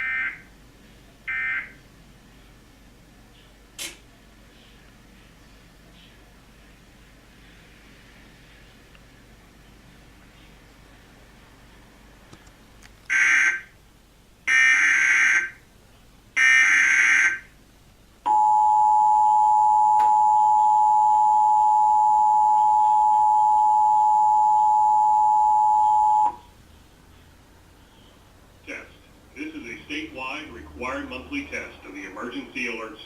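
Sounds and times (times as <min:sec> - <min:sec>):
steady dual tone: 0:18.3 - 0:26.4.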